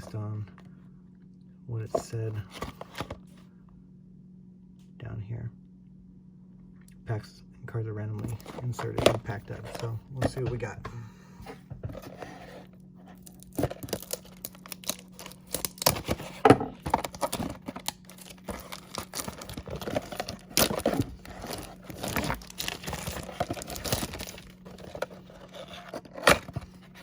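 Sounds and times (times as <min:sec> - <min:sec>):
packaging tearing and crinkling: 0:12.0 - 0:27.0.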